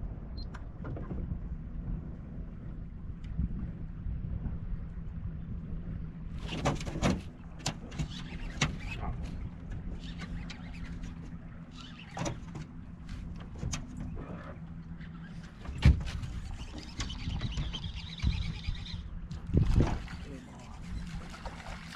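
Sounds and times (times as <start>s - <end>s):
clicks and knocks on boat: 6.4s - 20.2s.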